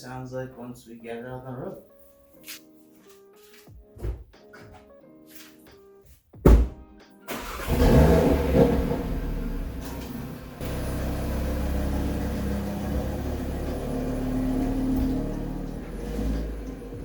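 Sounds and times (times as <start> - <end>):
car engine drone: 7.3 - 17.0.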